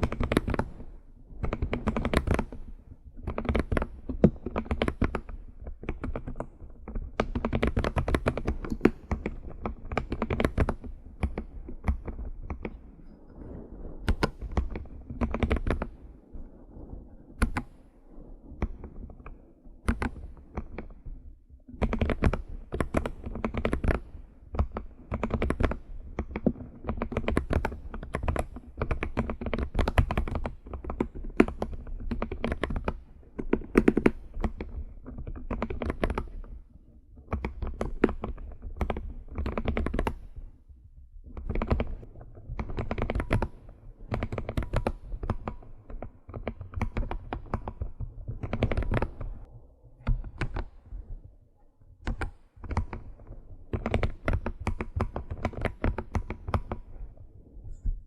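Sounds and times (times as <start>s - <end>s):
computer keyboard typing: 1.4s - 2.6s, 7.2s - 12.7s, 14.1s - 15.9s, 17.4s - 17.7s, 19.9s - 20.8s, 21.8s - 24.0s, 24.6s - 36.4s, 37.3s - 40.2s, 41.4s - 42.0s, 42.6s - 49.3s, 50.1s - 50.7s, 52.0s - 53.1s, 53.7s - 56.9s.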